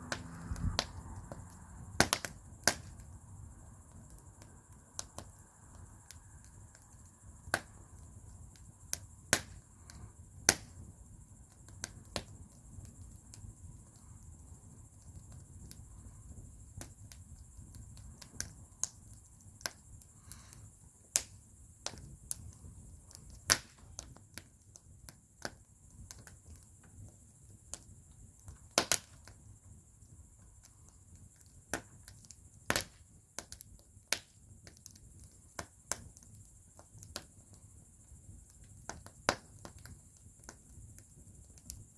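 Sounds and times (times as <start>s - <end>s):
faint low rumble: 0.0s - 4.2s
wood fire crackling and popping: 0.0s - 41.9s.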